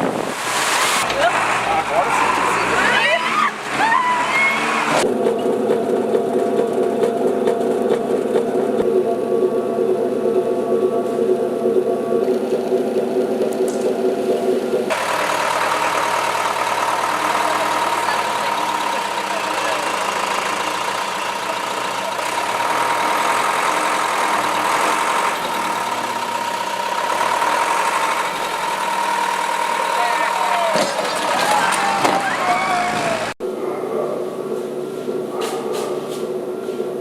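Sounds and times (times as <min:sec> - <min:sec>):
vehicle engine running with whine: 0:00.0 - 0:33.5
humming sound: 0:04.9 - 0:15.1.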